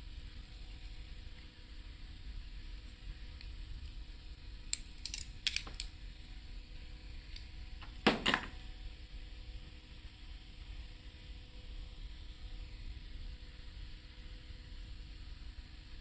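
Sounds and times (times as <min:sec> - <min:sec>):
small hard objects clicking: 0:04.7 - 0:05.9.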